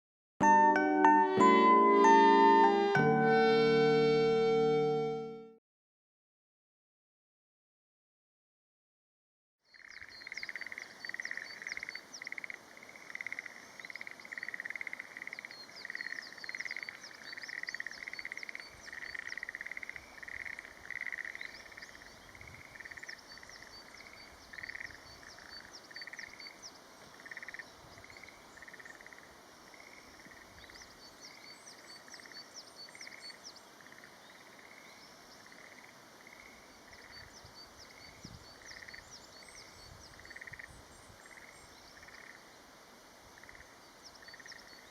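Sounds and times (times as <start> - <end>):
short high chirps: 0.4 - 5.6
frogs croaking in chorus: 9.7 - 37.3, 38.0 - 39.1, 40.1 - 42.5, 43.4 - 44.8.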